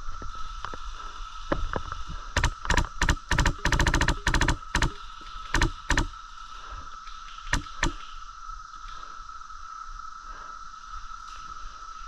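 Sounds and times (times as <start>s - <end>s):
airsoft guns firing: 2.4s - 6.1s, 7.5s - 8.0s.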